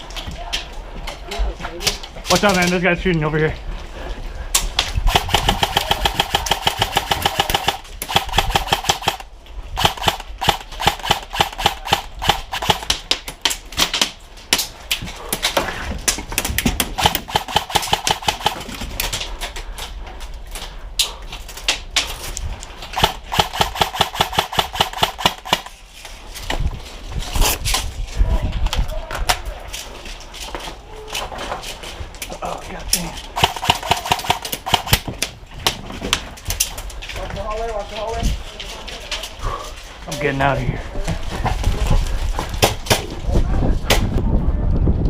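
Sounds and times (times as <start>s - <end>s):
airsoft rifle automatic fire: 5.1s - 13.0s, 16.9s - 18.7s, 23.0s - 25.7s, 33.4s - 35.1s.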